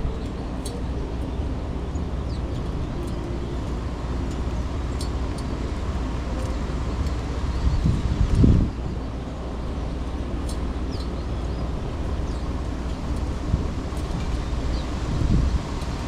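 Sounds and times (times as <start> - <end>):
distant city traffic: 0.0 - 16.0
wind: 0.0 - 16.0
small birds chirping: 10.5 - 13.2.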